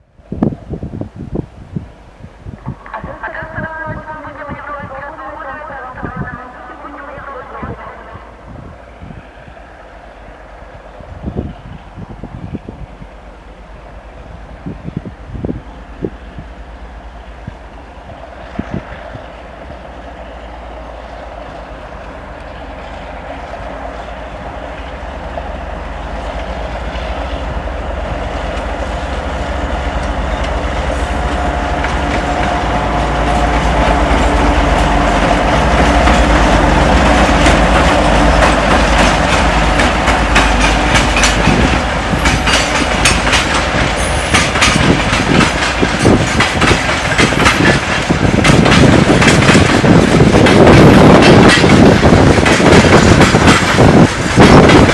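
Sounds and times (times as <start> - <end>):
locomotive engine rumble: 0.9 - 54.9
train wheels clattering: 24.6 - 54.9.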